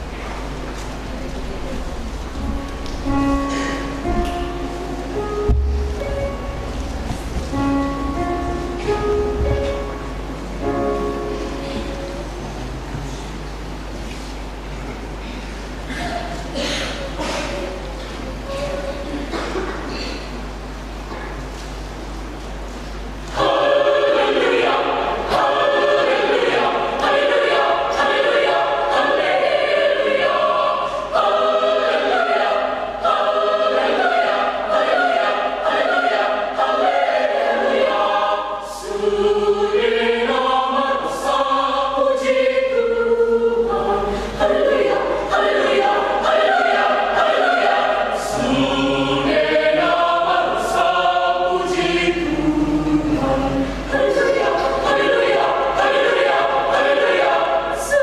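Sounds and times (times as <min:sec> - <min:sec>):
church choir singing: 0:02.2 - 0:12.5, 0:23.2 - 0:58.0.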